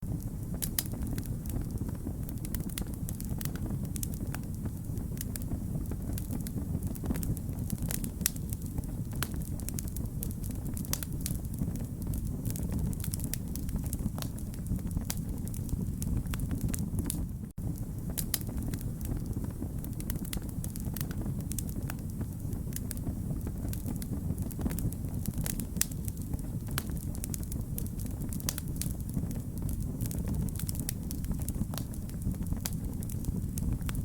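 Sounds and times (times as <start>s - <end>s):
fire popping and snapping: 0.0s - 34.0s
low rumble of burning: 0.0s - 34.0s
wood fire crackling: 0.0s - 34.0s.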